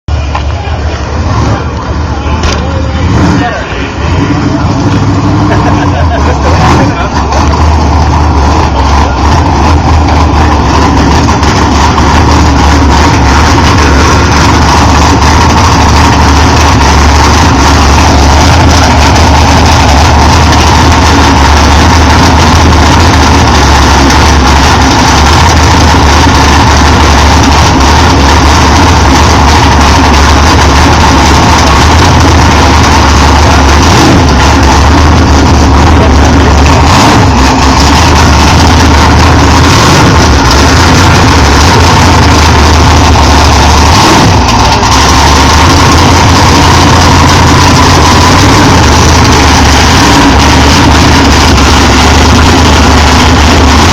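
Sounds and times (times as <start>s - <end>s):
loud vee eight engine running: 0.0s - 53.9s.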